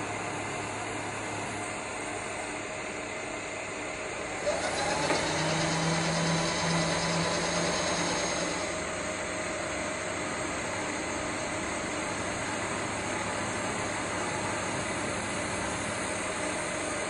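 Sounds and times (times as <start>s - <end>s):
milling machine running: 0.0s - 17.0s
rising machine whine: 4.2s - 9.8s.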